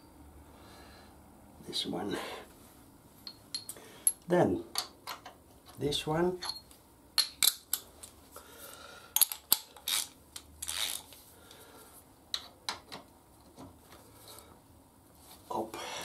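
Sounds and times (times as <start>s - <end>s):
metal wrench clicking and knocking: 3.2s - 4.2s, 7.2s - 7.9s, 9.2s - 11.0s.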